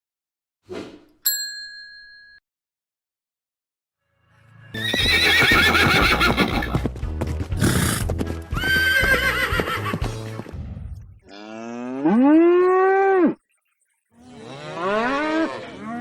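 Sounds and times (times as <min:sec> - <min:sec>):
horse whinnying: 0:04.8 - 0:06.8, 0:07.6 - 0:10.0
hoofbeats: 0:04.8 - 0:10.8.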